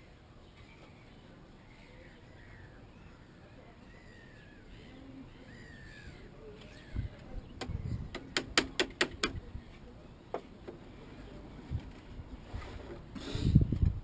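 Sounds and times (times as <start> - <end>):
faint bird calls: 0.4 - 8.0.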